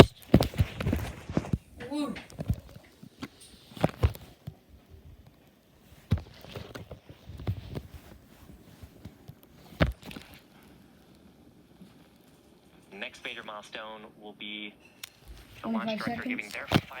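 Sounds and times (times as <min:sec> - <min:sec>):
rustling: 0:00.0 - 0:12.6.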